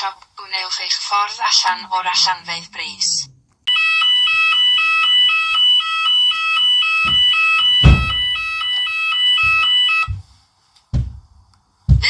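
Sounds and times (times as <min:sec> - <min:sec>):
two-tone fire alarm sounder: 0:03.7 - 0:10.3
low thuds: 0:07.0 - 0:08.6, 0:09.4 - 0:12.0.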